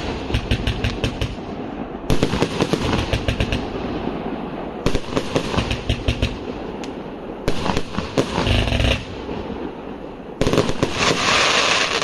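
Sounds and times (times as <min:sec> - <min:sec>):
firework bangs: 0:00.0 - 0:12.0
firework crackling hiss: 0:00.0 - 0:12.0.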